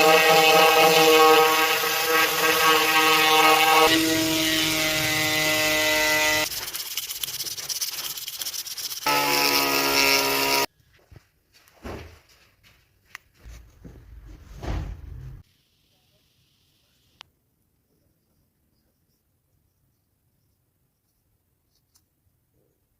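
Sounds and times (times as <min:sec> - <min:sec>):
power tool whining: 0:00.0 - 0:06.5, 0:09.0 - 0:10.7.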